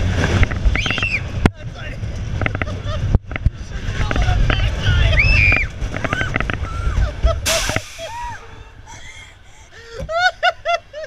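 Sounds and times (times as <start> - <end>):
roller coaster rumbling on track: 0.0 - 11.0
riders calling out: 3.8 - 8.6
brief hiss: 7.5 - 8.2.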